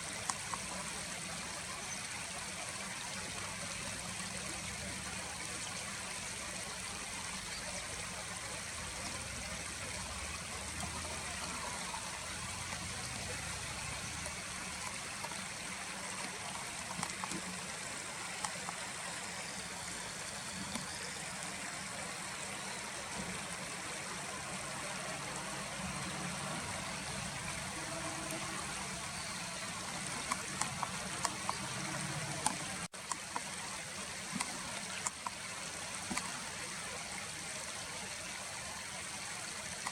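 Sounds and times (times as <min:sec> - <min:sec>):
stream running water: 0:00.0 - 0:39.9
faint ticks: 0:16.1 - 0:17.7, 0:29.8 - 0:33.5.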